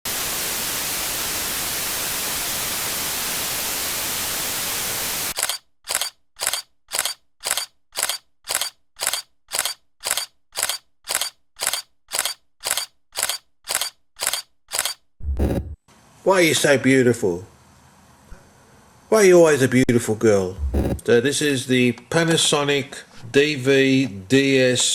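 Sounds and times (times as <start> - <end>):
static hiss: 0.1 - 5.4.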